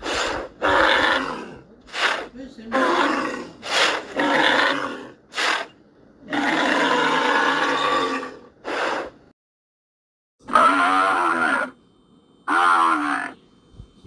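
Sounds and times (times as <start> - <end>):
animal calls: 10.5 - 11.8, 12.5 - 13.4.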